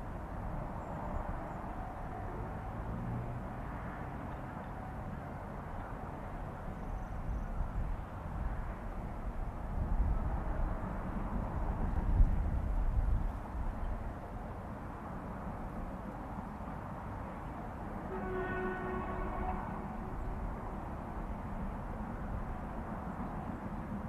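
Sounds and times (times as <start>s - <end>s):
wind buffeting microphone: 6.8s - 14.2s.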